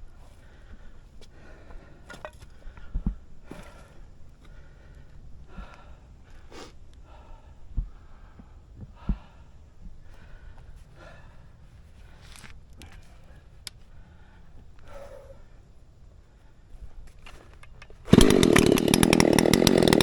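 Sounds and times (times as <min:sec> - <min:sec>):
soft breathy rustling: 0:00.0 - 0:17.0
dull low thumps: 0:02.8 - 0:03.5.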